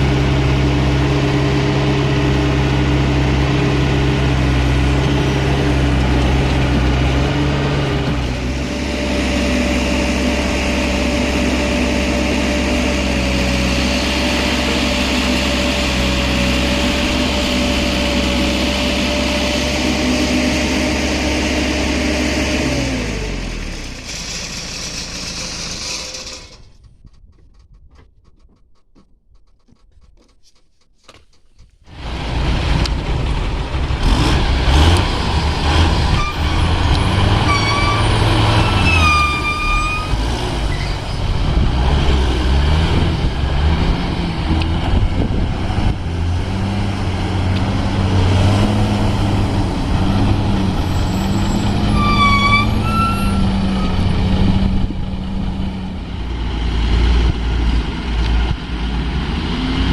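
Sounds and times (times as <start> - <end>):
heavy diesel engine: 0.0 - 27.7, 31.9 - 59.9
short high squeals: 36.1 - 41.3, 50.1 - 54.2.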